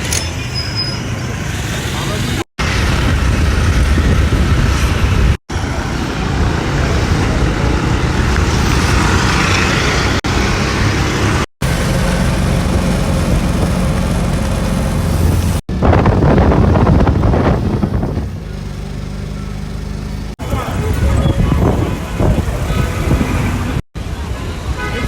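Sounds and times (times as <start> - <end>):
vehicle road and engine rumble: 0.0 - 25.0.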